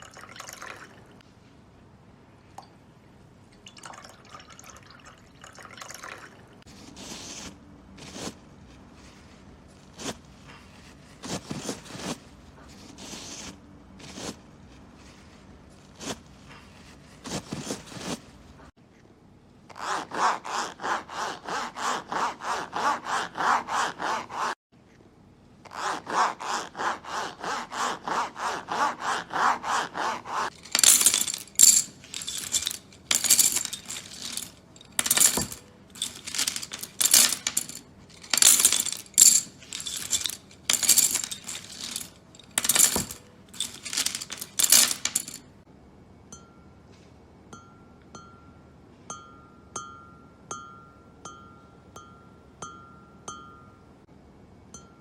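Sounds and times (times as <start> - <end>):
hand saw cutting wood: 19.8 - 24.6, 25.8 - 30.6.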